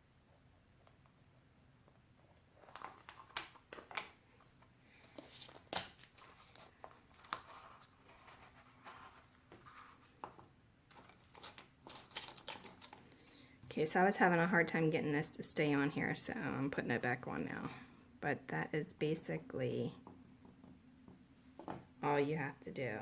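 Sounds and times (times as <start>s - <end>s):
wooden pieces clicking and tapping: 10.2s - 13.1s.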